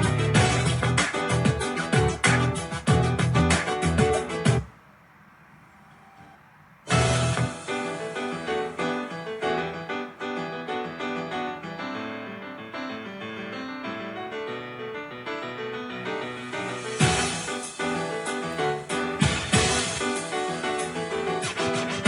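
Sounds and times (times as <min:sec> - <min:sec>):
piano music: 0:00.0 - 0:04.7, 0:05.8 - 0:22.0.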